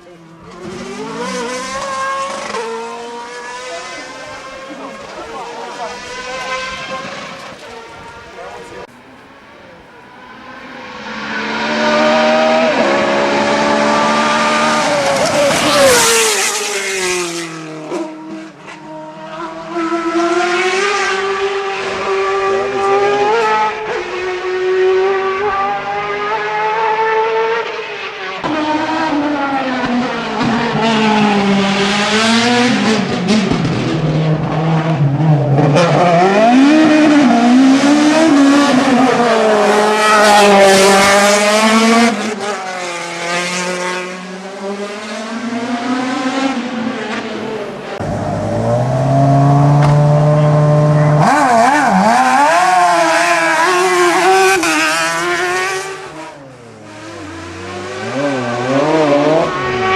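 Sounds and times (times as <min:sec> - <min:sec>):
race car engines revving: 0:00.0 - 0:59.9.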